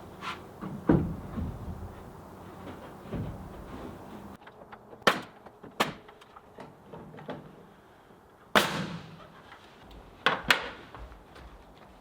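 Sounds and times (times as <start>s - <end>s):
sharp knocks and bangs: 0.6s - 1.9s.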